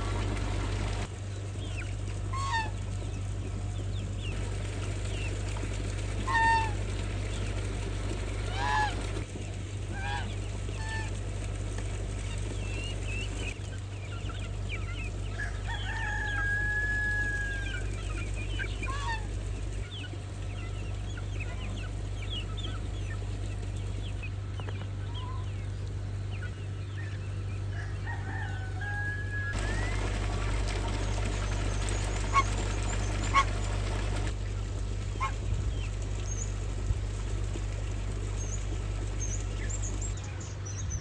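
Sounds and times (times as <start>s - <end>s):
chickens clucking: 0.0s - 40.2s
steady low hum: 0.0s - 41.0s
rooster crowing: 15.4s - 17.8s, 27.7s - 29.8s.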